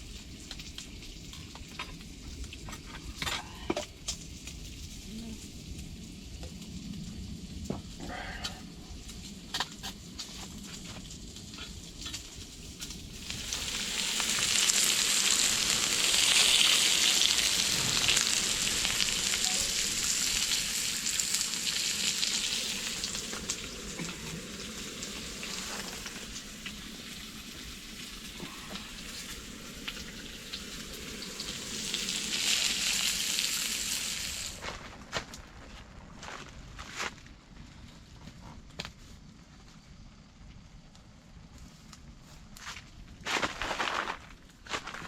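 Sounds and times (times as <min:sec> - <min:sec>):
food sizzling: 0:00.0 - 0:34.9.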